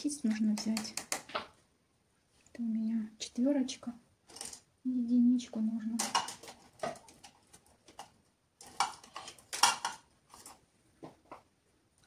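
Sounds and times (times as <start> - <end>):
paintbrushes clicking and clattering: 0.0 - 1.6, 4.2 - 4.7, 5.8 - 10.6.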